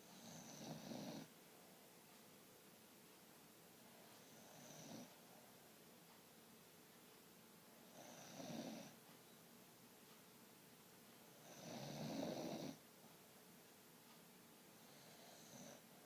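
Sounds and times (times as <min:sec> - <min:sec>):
dog snoring: 0:00.0 - 0:01.3, 0:04.2 - 0:05.2, 0:07.8 - 0:09.0, 0:11.4 - 0:12.8, 0:14.8 - 0:15.9.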